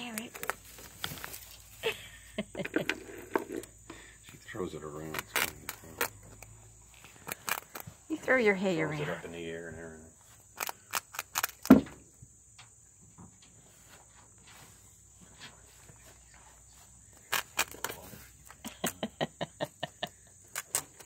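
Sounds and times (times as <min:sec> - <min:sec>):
dry hay crackling and rustling: 0:00.0 - 0:01.9.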